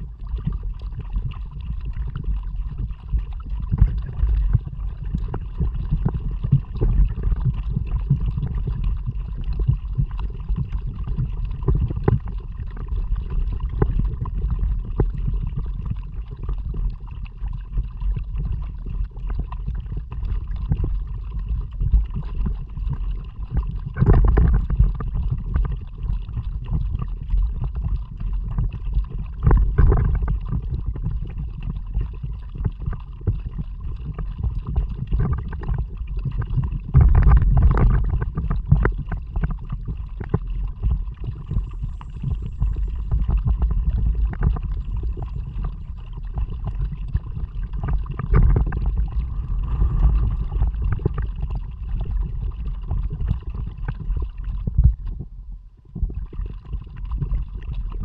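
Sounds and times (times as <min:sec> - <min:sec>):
water splashing against kayak: 0:00.0 - 0:58.0
wind buffeting microphone: 0:40.7 - 0:55.3.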